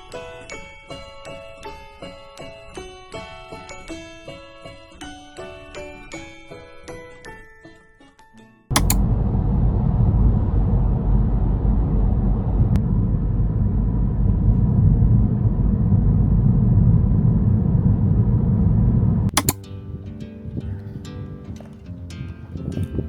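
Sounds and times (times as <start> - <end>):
loud low rumble: 8.7 - 19.4.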